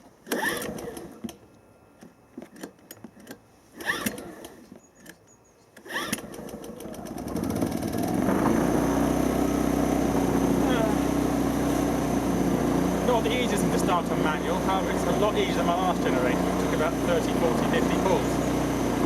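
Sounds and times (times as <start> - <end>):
recoil cord pulls: 0.0 - 1.4, 2.0 - 5.2, 5.8 - 8.8
generator engine running: 5.9 - 19.0.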